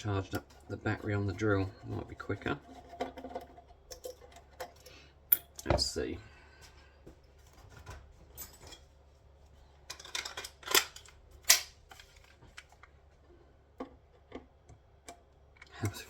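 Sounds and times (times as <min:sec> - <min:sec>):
tools clicking and clattering: 0:02.6 - 0:05.7, 0:09.9 - 0:12.9.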